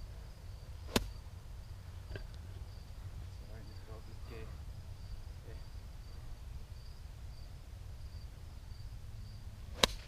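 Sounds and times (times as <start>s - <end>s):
faint high insect chirp: 0.0s - 10.0s
golf club striking ball: 0.8s - 1.2s, 9.7s - 10.0s.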